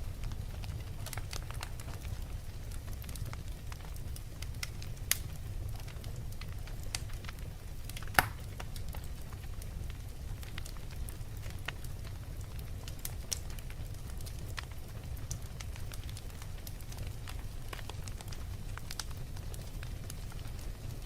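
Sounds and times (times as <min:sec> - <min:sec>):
fire crackling: 0:00.0 - 0:21.0
fire pops: 0:00.2 - 0:09.4.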